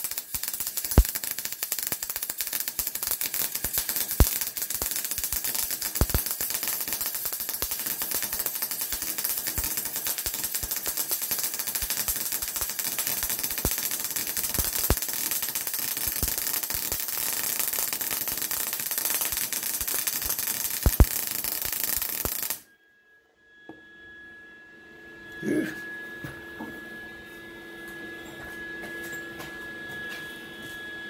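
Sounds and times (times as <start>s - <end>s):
welder arc crackling: 0.0s - 22.6s.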